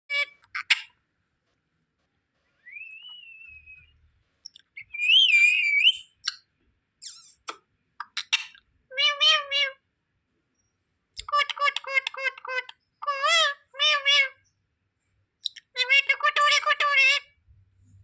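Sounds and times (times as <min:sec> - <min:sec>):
parrot whistling: 0:02.6 - 0:04.0, 0:04.8 - 0:06.2, 0:07.0 - 0:07.6
parrot clicks and chirps: 0:02.6 - 0:08.6, 0:11.2 - 0:12.8, 0:15.4 - 0:15.8
parrot chattering call: 0:07.0 - 0:09.8.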